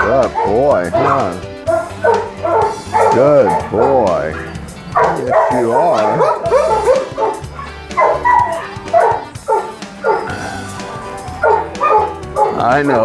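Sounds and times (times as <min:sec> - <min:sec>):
background music: 0:00.0 - 0:13.0
dogs barking and yipping: 0:00.0 - 0:13.0.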